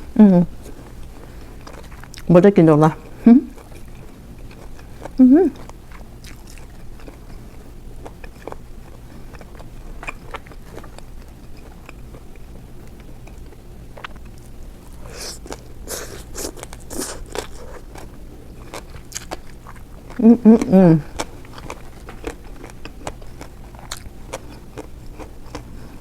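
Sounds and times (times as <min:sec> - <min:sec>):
person chewing crunchy food: 0:00.0 - 0:26.0.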